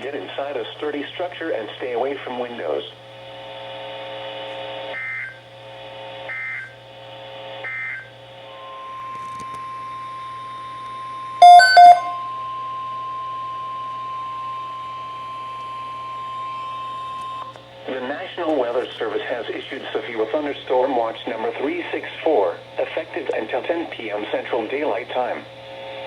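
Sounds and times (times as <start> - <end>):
loud short beeps: 11.4 - 12.2
steady alert tone: 11.4 - 12.2
two-tone data bursts: 11.4 - 12.2.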